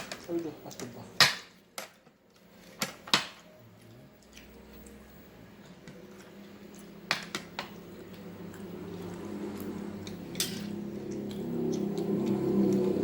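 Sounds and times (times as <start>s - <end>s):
wet chewing of food: 3.7s - 7.0s, 7.7s - 13.0s
low hum: 7.7s - 13.0s
cutlery clinking against bowl: 10.3s - 10.8s.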